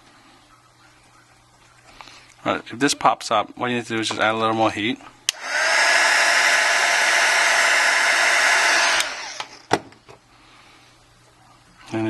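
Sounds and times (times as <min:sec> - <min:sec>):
hot-air blower blowing: 0:05.3 - 0:09.7.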